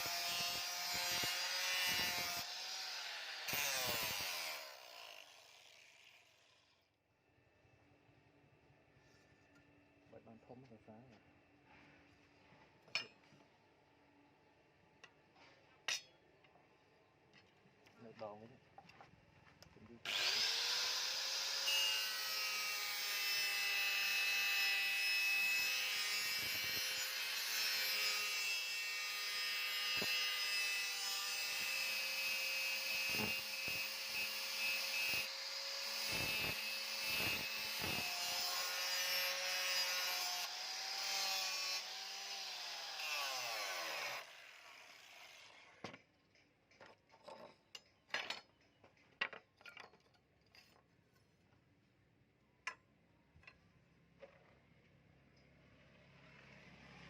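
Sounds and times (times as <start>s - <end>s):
grinder winding down: 0.0s - 6.1s, 20.1s - 21.8s
electric grinder grinding metal: 0.0s - 6.5s, 20.1s - 45.6s.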